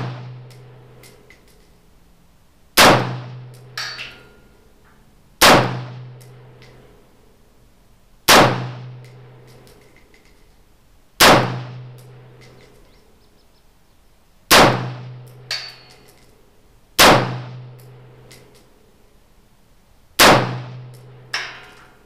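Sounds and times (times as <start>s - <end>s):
rifle shots with echo: 0.0s - 0.7s, 2.8s - 4.3s, 5.4s - 6.2s, 8.3s - 9.2s, 11.2s - 12.6s, 14.5s - 15.5s, 17.0s - 18.0s, 20.2s - 21.8s
light metallic clink: 3.6s - 5.0s, 15.3s - 16.4s.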